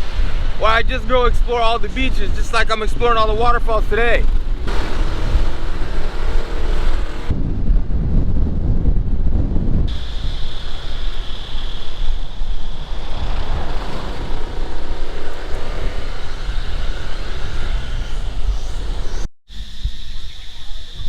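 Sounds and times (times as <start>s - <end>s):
wind rumble on microphone: 0.0s - 21.0s
scooter engine rumble: 4.2s - 7.9s, 9.9s - 19.3s
steady high whine: 9.9s - 21.0s.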